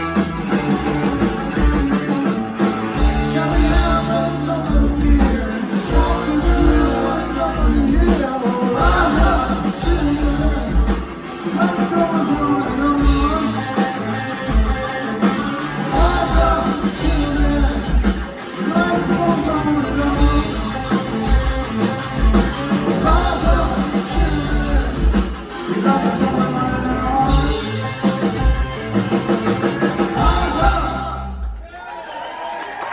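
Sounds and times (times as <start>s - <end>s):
rock band playing live: 0.0s - 31.6s
person singing: 2.6s - 21.6s, 22.5s - 27.9s, 30.0s - 31.5s.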